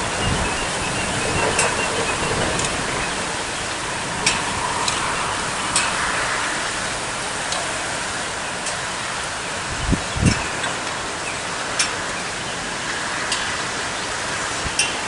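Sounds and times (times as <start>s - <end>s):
strong wind rushing: 0.0s - 9.0s, 9.6s - 10.6s
wind rumbling on microphone: 0.0s - 15.0s.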